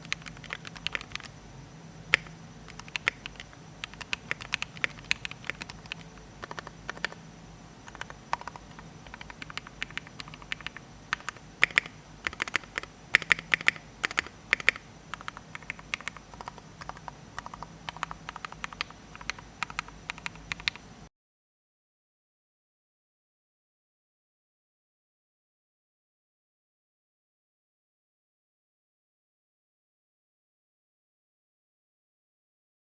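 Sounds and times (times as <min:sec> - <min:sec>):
mechanical keyboard typing: 0:00.0 - 0:01.3, 0:02.1 - 0:07.2, 0:07.8 - 0:20.8.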